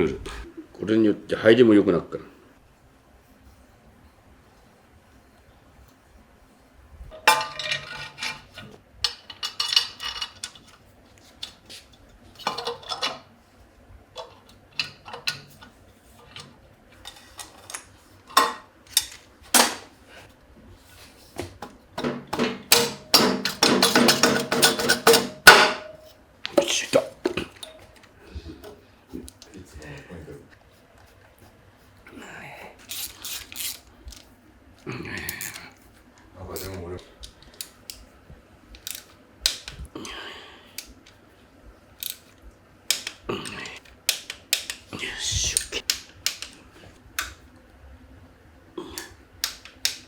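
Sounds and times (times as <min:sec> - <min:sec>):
tools clinking on metal parts: 0:07.2 - 0:10.6, 0:22.0 - 0:26.0.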